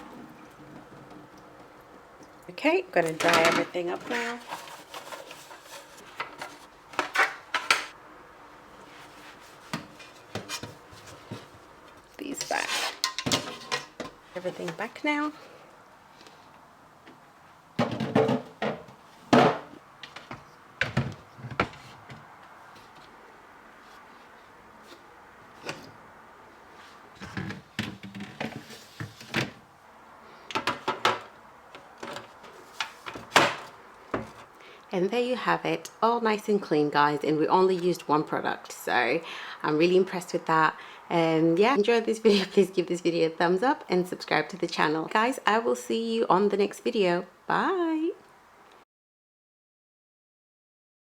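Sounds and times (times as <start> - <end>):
fridge parts knocking and clattering: 17.8 - 19.7
plastic shelves knocking and scraping: 17.8 - 22.4, 27.2 - 29.6, 30.5 - 34.4.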